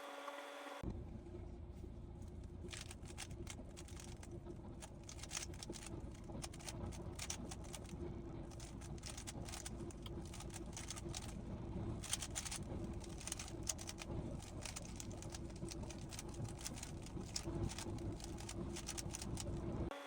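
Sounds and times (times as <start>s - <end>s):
steady low hum: 0.0s - 20.0s
plastic puzzle cube clicking: 2.7s - 4.2s, 5.1s - 7.9s, 8.6s - 11.3s, 12.0s - 19.5s.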